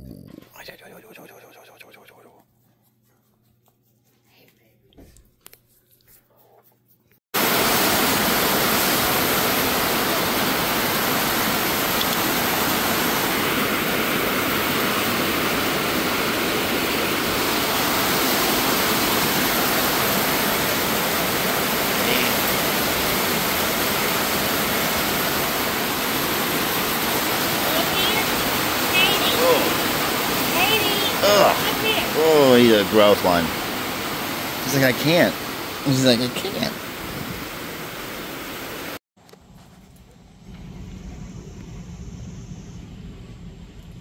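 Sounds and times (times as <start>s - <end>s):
heavy rain pouring: 7.4s - 39.0s.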